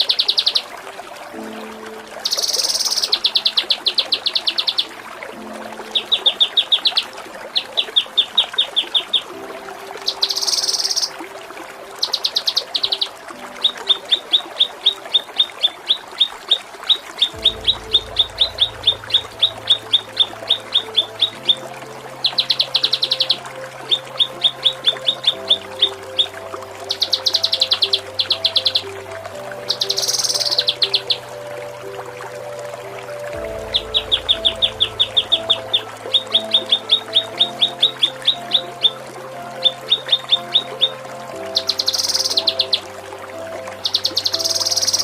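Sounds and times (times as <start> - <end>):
songbird singing rapid trills: 0.0 - 0.7, 2.2 - 5.0, 10.0 - 11.2, 12.0 - 31.4, 33.1 - 39.0, 39.6 - 42.9, 43.7 - 45.0
low steady drone: 17.3 - 39.6.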